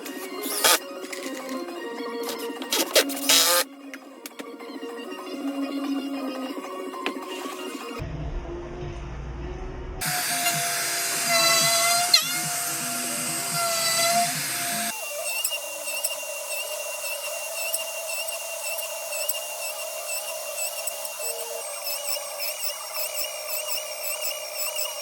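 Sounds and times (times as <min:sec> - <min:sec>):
power tool motor whine: 0:00.0 - 0:03.7, 0:10.0 - 0:25.0.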